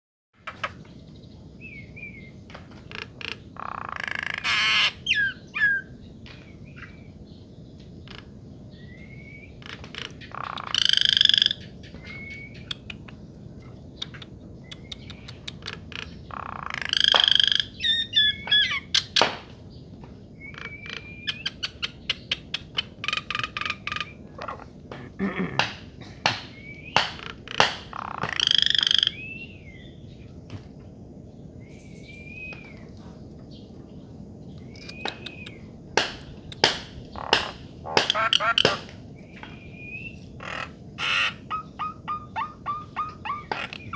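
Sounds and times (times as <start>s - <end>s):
harsh bird calls: 2.8s - 7.2s, 8.0s - 19.3s, 20.4s - 30.0s, 34.6s - 43.9s
bird chirping: 3.6s - 7.0s, 8.0s - 19.3s, 34.5s - 43.9s
clicking bird notes: 14.0s - 15.8s, 34.8s - 38.9s, 43.0s - 43.9s.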